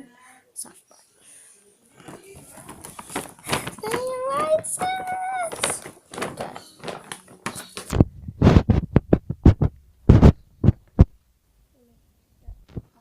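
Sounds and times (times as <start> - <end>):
soft heavy handling thumps: 2.0 - 11.1.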